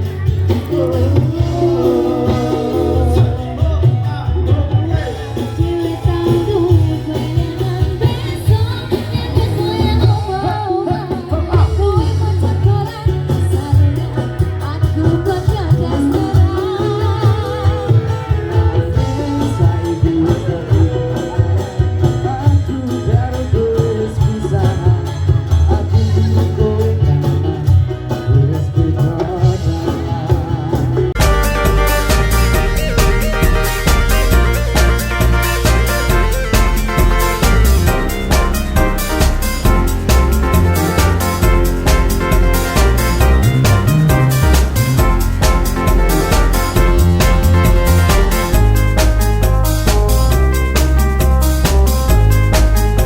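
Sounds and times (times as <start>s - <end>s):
person singing over guitar: 0.0s - 31.2s
steady bass line: 0.0s - 53.0s.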